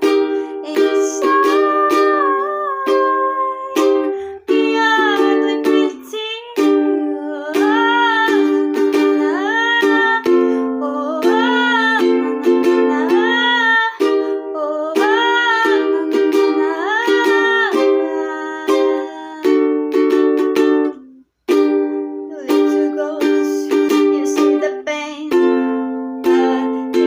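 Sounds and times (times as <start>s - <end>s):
high voice singing: 0.0s - 19.6s
strummed ukulele chords: 0.0s - 27.0s.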